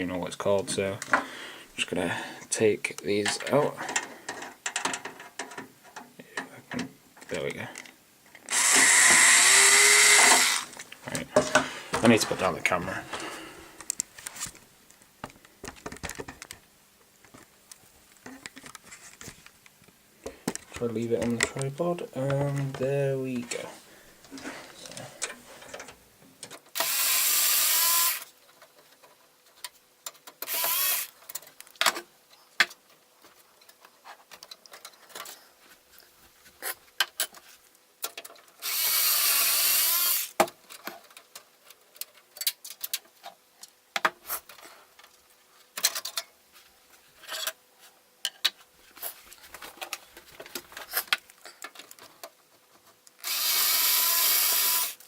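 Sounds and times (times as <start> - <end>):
clicks and metallic knocks of screws: 3.2 - 9.3
electric screwdriver whirring: 8.5 - 10.8, 26.8 - 28.3, 30.4 - 31.1, 38.6 - 40.3, 53.2 - 55.0.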